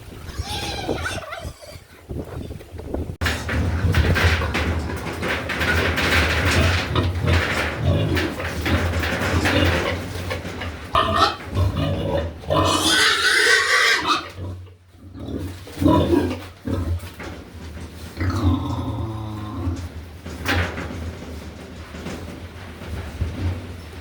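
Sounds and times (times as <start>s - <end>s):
pigs grunting and squealing: 0.2s - 2.1s, 3.2s - 17.4s, 18.1s - 20.2s.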